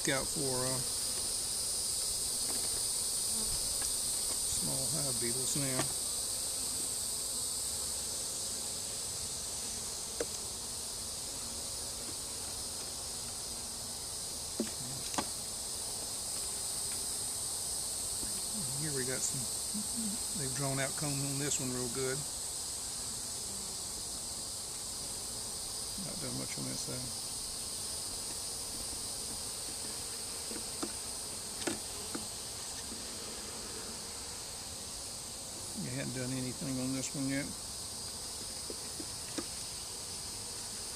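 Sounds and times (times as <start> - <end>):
high-pitched insect drone: 0.0 - 40.9
honey bees buzzing: 0.0 - 40.9
hive frames clicking: 28.1 - 32.9.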